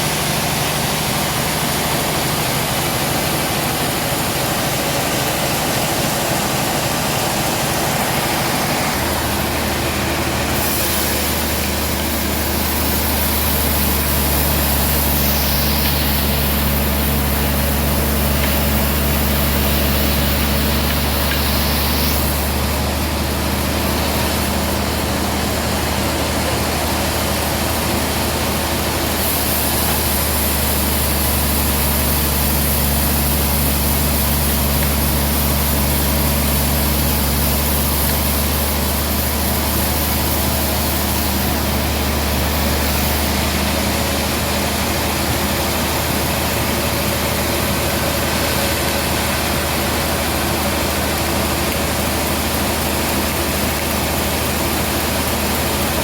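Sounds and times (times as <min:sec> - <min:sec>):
sawmill humming: 0:00.0 - 0:56.0
saw blade hissing: 0:04.8 - 0:22.6.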